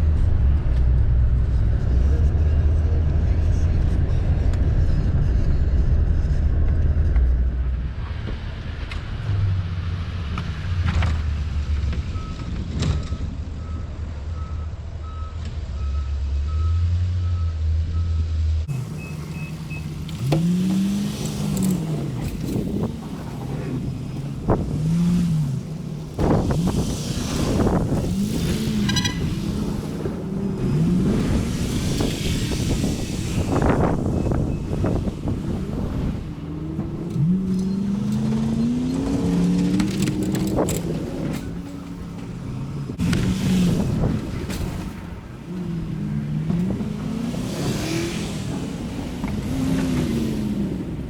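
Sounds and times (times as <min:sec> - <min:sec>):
truck engine revving: 0:00.0 - 0:51.0
brief high beep: 0:28.8 - 0:29.4.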